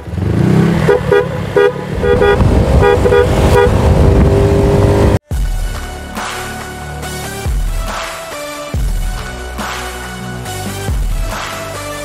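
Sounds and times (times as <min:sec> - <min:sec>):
horn short toots: 0:00.8 - 0:03.9.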